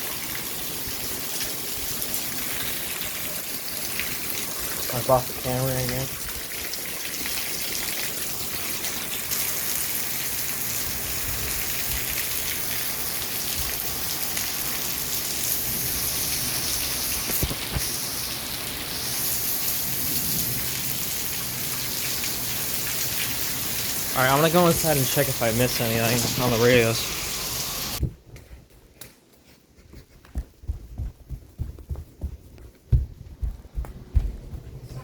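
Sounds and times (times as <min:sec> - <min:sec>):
heavy rain pouring: 0:00.0 - 0:28.0.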